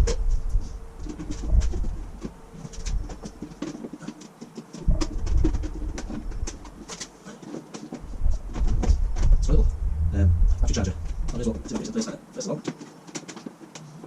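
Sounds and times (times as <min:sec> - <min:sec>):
low rumble of handling: 0:08.0 - 0:12.0.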